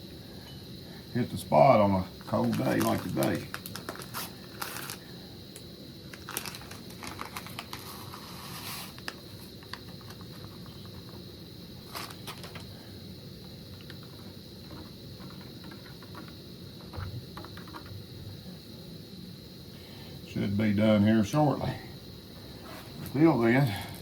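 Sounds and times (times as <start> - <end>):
faint background hum: 0.0 - 24.0
cooking gear clicking and crinkling: 2.2 - 5.0, 6.1 - 7.8.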